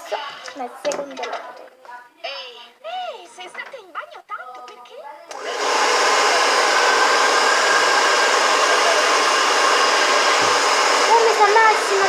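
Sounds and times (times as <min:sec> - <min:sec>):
hair dryer blowing: 0:05.3 - 0:12.0.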